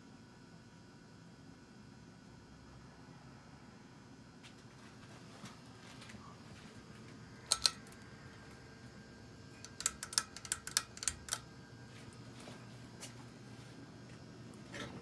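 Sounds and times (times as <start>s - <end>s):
ceiling fan humming faintly: 0.0s - 15.0s
sharp clicks: 7.5s - 8.1s, 9.6s - 11.5s.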